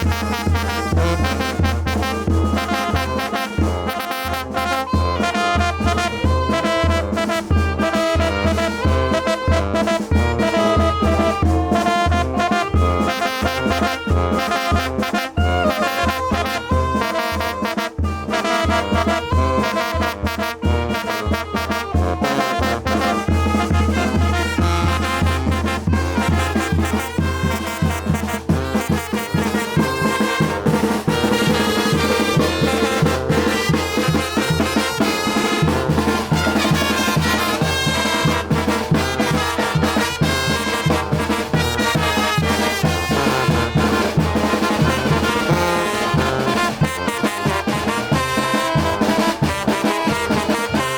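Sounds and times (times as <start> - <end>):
brass band playing: 0.0 - 50.9
trumpets and trombones: 0.0 - 50.9.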